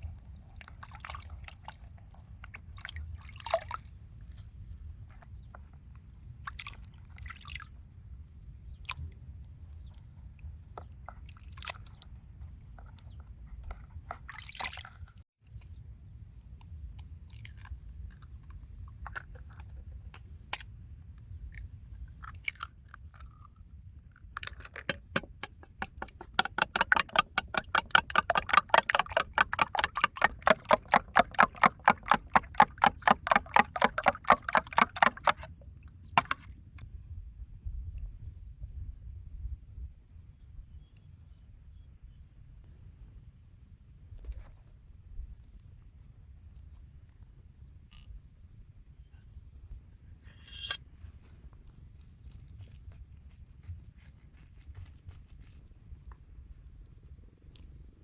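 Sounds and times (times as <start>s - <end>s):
utensils clicking and tapping: 24.5s - 35.5s, 36.2s - 36.5s
fast sharp chopping strokes: 24.9s - 35.5s.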